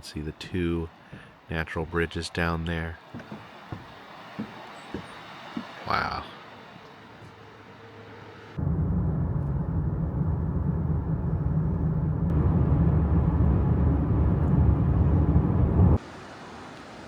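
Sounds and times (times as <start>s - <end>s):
car driving rumble: 8.6s - 16.0s.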